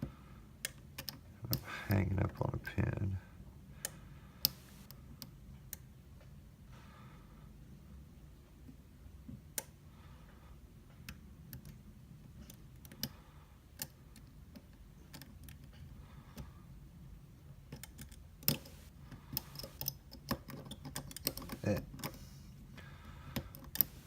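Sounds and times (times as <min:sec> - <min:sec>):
lock pick clicking in lock: 0:19.4 - 0:22.2.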